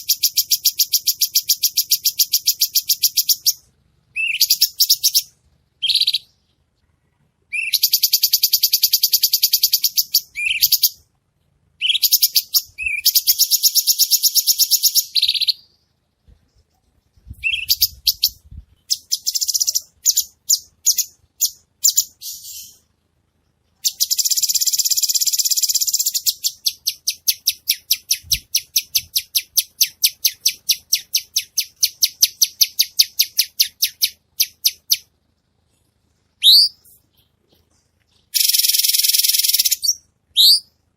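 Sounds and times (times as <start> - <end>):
bird singing high trills: 7.5 - 11.0, 17.4 - 22.8, 36.4 - 37.0, 38.3 - 40.8.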